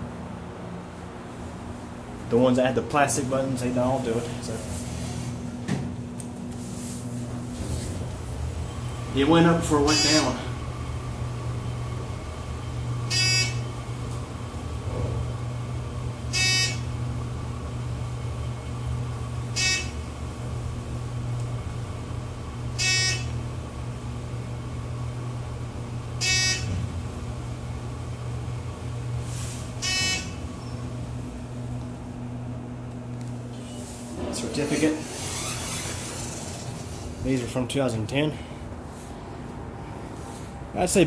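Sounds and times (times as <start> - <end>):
steady low hum: 0.0 - 41.0
short electronic beep: 13.1 - 13.6, 16.3 - 16.8, 19.6 - 20.0, 22.8 - 23.3.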